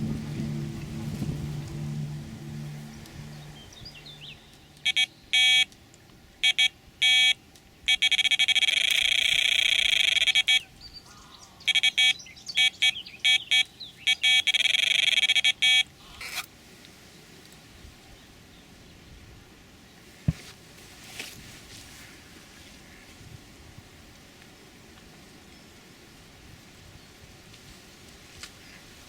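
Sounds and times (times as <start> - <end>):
bite alarm long tone: 0.0 - 5.7, 11.7 - 15.8
bite alarm bleeps: 0.5 - 5.7, 6.4 - 10.7, 11.6 - 15.9.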